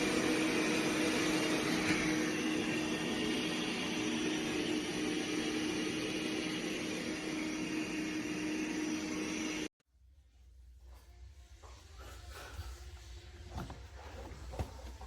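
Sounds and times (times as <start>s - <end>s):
robot vacuum whirring: 0.0s - 9.7s.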